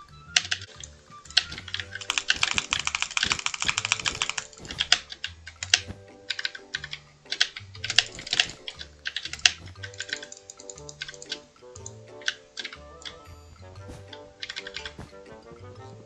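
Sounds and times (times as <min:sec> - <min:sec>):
background music with bass line: 0:00.0 - 0:16.0
computer keyboard typing: 0:01.4 - 0:05.0, 0:05.6 - 0:13.3.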